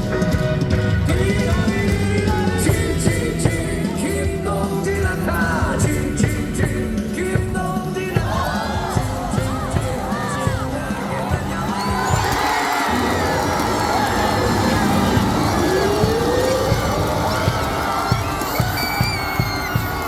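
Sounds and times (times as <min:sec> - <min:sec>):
crowd singing and chanting: 0:00.0 - 0:20.0
stadium cheer music over loudspeakers: 0:00.0 - 0:20.0
shouts and whoops: 0:08.2 - 0:20.0.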